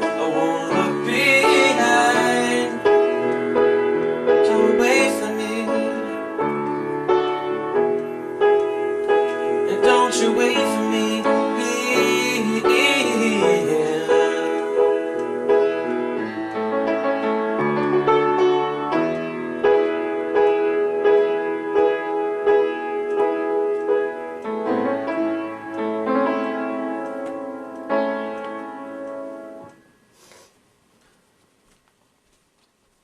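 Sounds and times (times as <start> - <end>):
piano chords: 0.0 - 30.1.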